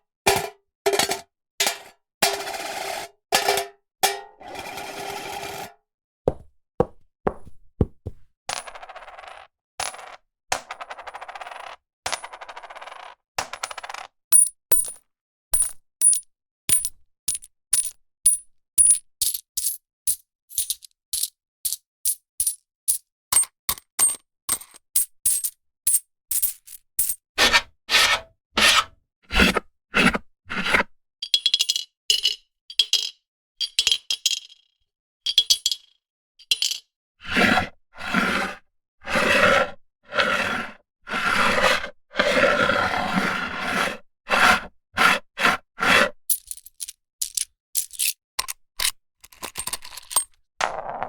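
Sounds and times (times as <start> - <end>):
heavy coin impacts: 15.6 - 23.0, 46.3 - 48.2, 49.4 - 51.0
single coins clinking: 15.6 - 23.0, 24.0 - 27.2, 46.3 - 51.0
coins rattling: 16.8 - 23.0, 25.3 - 27.2, 46.3 - 51.0.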